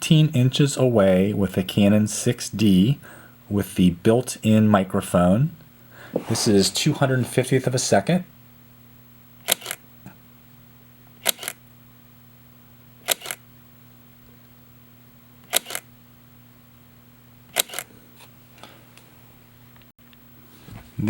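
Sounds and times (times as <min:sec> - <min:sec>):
camera shutter clicks: 0:09.4 - 0:09.8, 0:11.2 - 0:11.6, 0:13.0 - 0:13.4, 0:15.5 - 0:15.9, 0:17.5 - 0:17.9.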